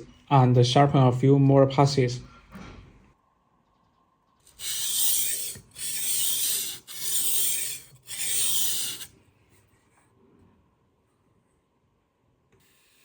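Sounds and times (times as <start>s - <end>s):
sharpening stone rasping on knife: 4.5s - 9.1s.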